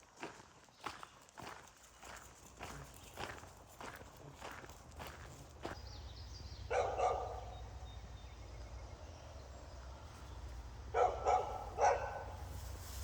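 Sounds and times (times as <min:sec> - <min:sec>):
dog barking: 0:06.7 - 0:07.6, 0:10.9 - 0:12.4.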